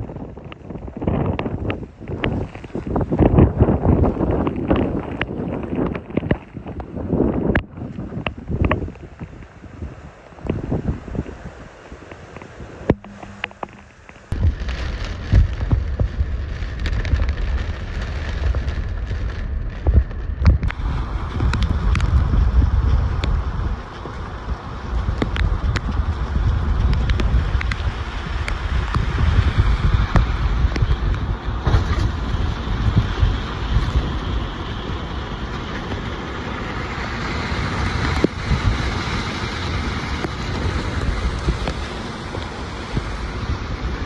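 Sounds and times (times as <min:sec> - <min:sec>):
hurricane wind gusting: 0:00.0 - 0:44.0
debris ticking and knocking: 0:12.9 - 0:20.8
loud low rumble: 0:12.9 - 0:38.8.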